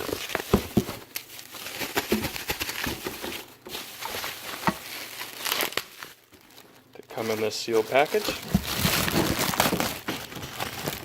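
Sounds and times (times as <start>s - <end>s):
packing peanuts and plastic rustling: 0.0s - 11.0s.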